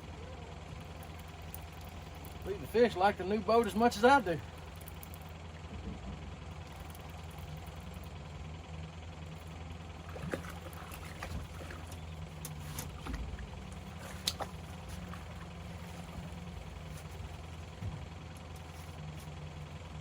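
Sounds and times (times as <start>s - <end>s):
boat motor humming: 0.0s - 20.0s
clicks and knocks on boat: 10.0s - 19.4s.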